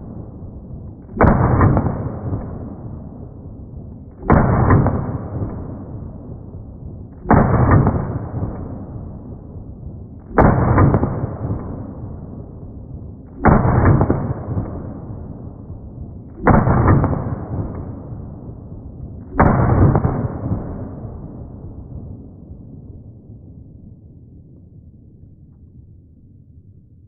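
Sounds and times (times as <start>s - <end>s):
pistol shots: 1.1s - 2.8s, 4.2s - 5.9s, 7.2s - 9.0s, 10.2s - 12.0s, 13.3s - 15.4s, 16.3s - 18.2s, 19.3s - 21.2s.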